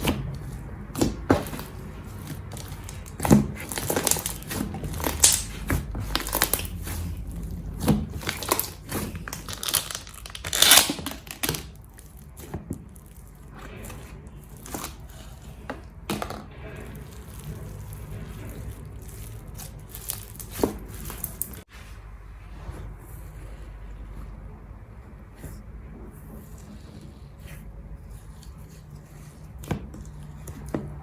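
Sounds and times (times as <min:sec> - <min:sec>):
slime crackling and popping: 0:00.9 - 0:15.3, 0:16.7 - 0:21.6.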